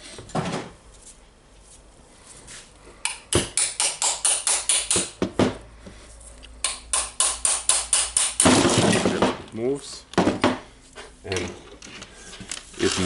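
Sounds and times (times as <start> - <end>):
hammer striking metal punch: 6.6 - 9.1.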